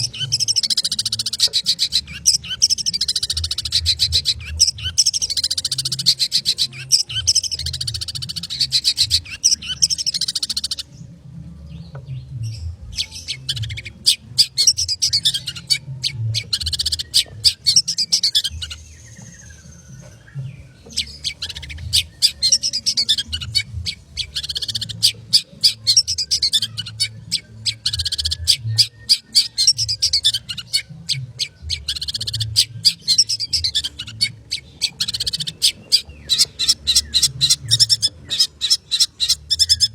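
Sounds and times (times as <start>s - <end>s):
shrike singing rapid high notes: 0.0s - 10.9s, 20.9s - 39.9s.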